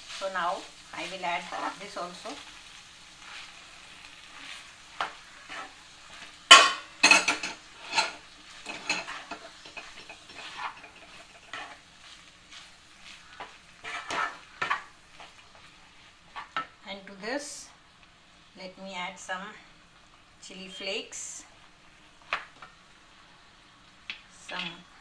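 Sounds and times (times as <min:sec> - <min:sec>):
faint sizzle: 0:00.0 - 0:25.0
spoon scraping a pan: 0:01.0 - 0:02.6, 0:03.2 - 0:16.8.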